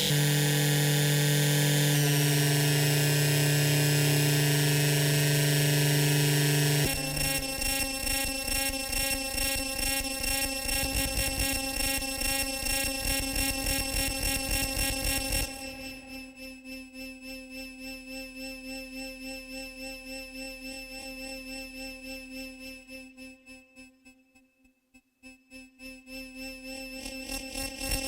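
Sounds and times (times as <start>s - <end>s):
synthesizer drone: 0.0s - 8.3s.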